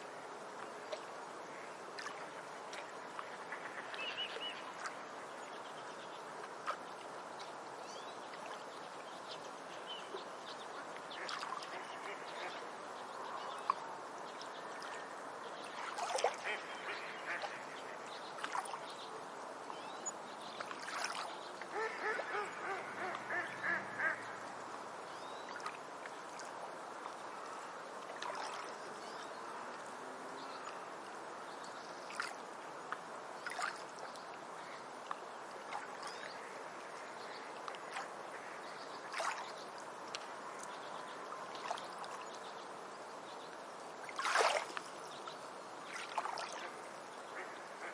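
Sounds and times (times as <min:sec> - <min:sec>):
water washing on beach: 0:00.0 - 0:47.9
waterbirds calling: 0:00.0 - 0:47.9
quacking calls: 0:21.7 - 0:24.3.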